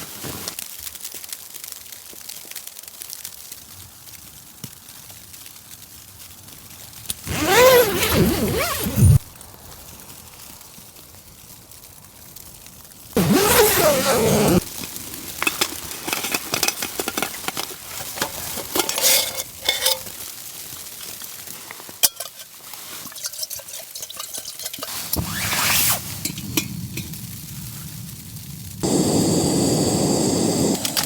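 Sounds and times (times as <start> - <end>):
camp gear rustling: 7.2 - 9.2, 13.2 - 27.1
light clicks and clinks: 15.4 - 20.2, 22.0 - 25.0.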